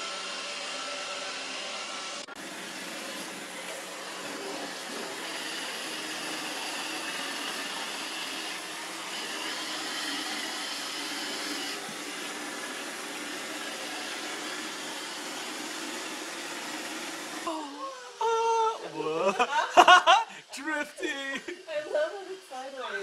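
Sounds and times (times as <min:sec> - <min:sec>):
robot vacuum motor whir: 0:00.0 - 0:18.3.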